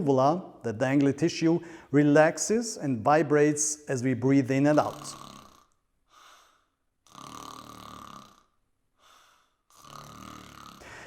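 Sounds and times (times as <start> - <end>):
faint breath: 1.6 - 1.9, 6.1 - 6.8, 9.0 - 9.7, 10.8 - 11.0
person snoring: 4.7 - 11.0.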